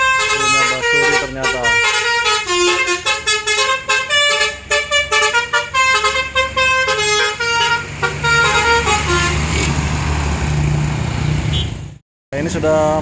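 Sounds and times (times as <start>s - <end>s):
bus horn playing tune: 0.0s - 9.8s, 11.4s - 11.9s
bus engine running: 1.9s - 12.0s.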